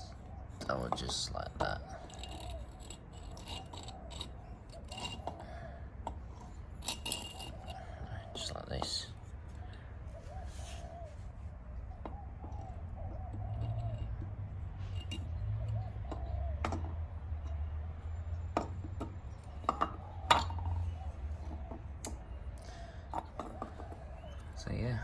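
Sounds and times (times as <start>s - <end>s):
metallic clicks of tools and bolts: 0.6s - 5.5s, 6.1s - 7.8s.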